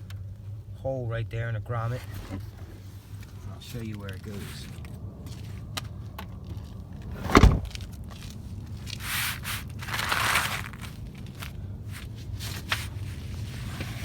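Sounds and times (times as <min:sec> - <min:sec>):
rustling and scraping: 0:01.8 - 0:14.0
loud thump: 0:07.1 - 0:07.8.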